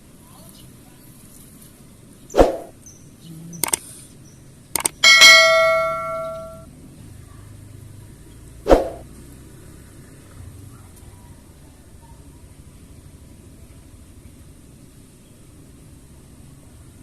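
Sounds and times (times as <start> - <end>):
sharp clicks: 3.6 - 3.9, 4.8 - 5.3
metal object ringing: 4.9 - 6.6.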